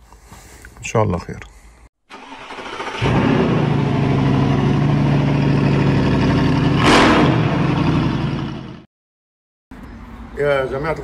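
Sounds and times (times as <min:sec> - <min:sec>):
starter motor cranking engine: 0:02.1 - 0:04.5.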